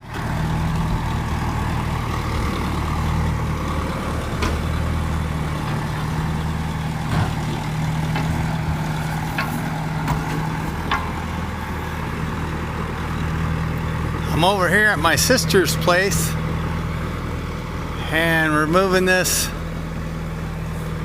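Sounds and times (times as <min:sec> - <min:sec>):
engine idling: 0:00.0 - 0:21.0
short knocks or clanks: 0:04.4 - 0:04.7.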